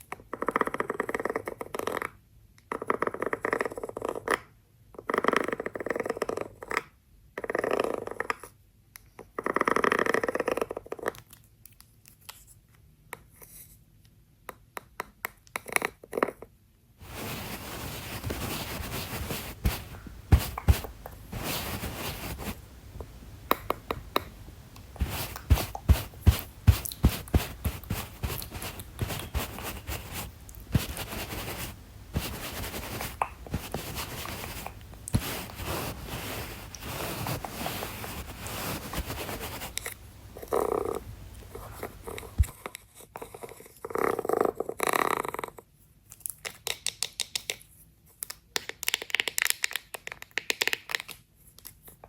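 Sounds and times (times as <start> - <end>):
scratchy rustle: 17.0 - 42.6.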